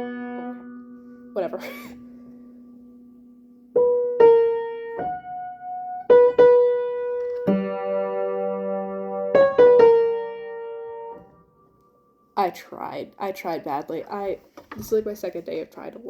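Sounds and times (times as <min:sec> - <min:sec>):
slow halting piano notes: 0:00.0 - 0:12.4.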